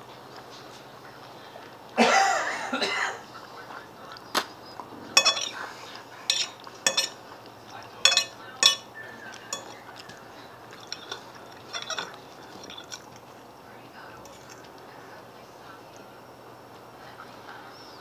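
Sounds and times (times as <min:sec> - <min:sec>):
fork scraping a plate: 0:05.0 - 0:07.2, 0:08.0 - 0:13.2.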